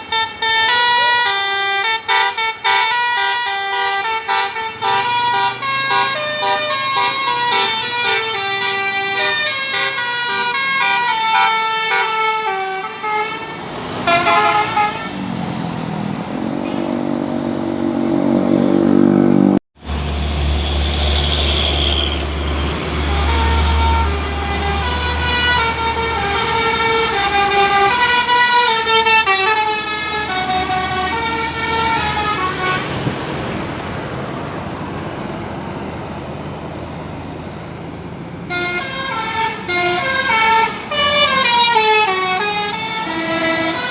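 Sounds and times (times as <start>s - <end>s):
melodic multi-tone bus horns: 0.0s - 15.4s, 21.8s - 33.1s, 38.4s - 43.9s
bus engine rumbling: 0.0s - 43.9s.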